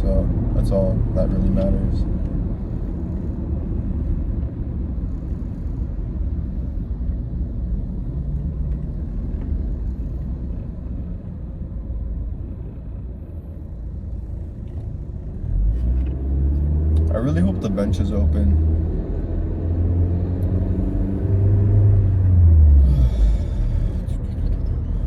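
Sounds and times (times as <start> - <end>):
road and engine rumble in car: 0.0 - 25.0.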